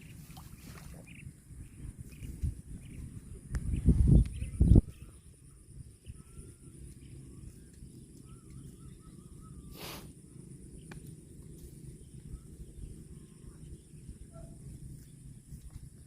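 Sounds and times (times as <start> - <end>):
faint bird chirps: 0.0 - 15.8
insect hum: 0.0 - 16.0
short hiss: 9.7 - 10.1.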